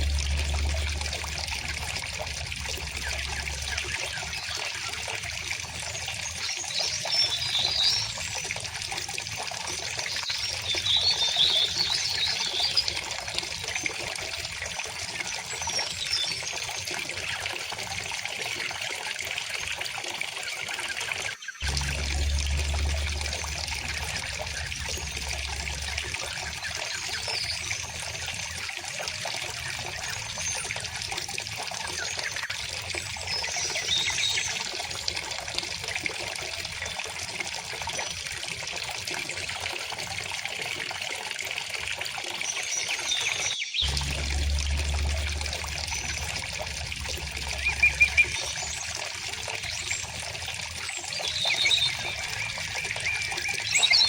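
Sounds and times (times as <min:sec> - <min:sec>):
river water flowing: 0:00.0 - 0:09.2, 0:21.6 - 0:35.2, 0:42.7 - 0:54.0
birds chirping: 0:42.8 - 0:54.0.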